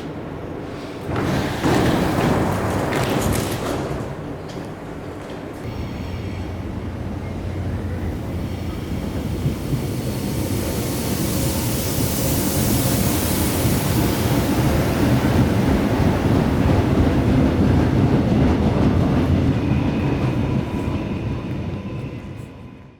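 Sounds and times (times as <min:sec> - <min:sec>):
train wheels rumbling on rail: 0:00.0 - 0:22.9
faint high whine: 0:05.7 - 0:15.2
hiss: 0:08.2 - 0:16.3.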